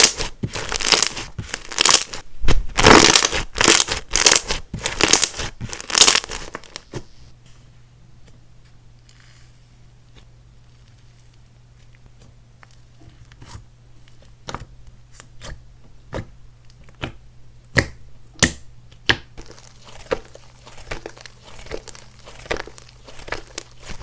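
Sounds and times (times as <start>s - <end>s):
slime crackling and popping: 0.0s - 6.8s, 19.4s - 24.0s.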